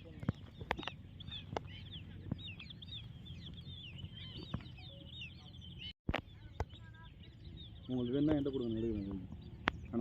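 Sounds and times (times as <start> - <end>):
small birds chirping: 0.0 - 10.0.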